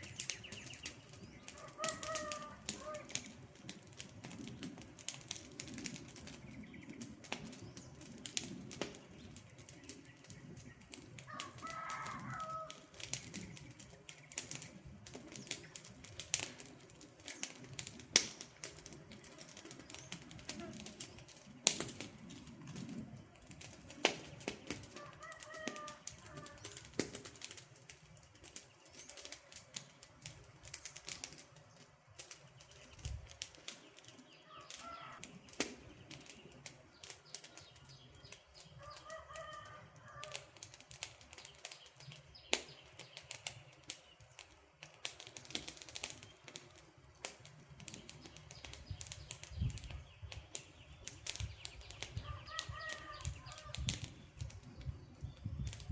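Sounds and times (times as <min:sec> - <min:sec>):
bird calling: 0:00.0 - 0:03.2, 0:34.4 - 0:36.2, 0:51.7 - 0:54.2
campfire crackling and popping: 0:00.0 - 0:55.9.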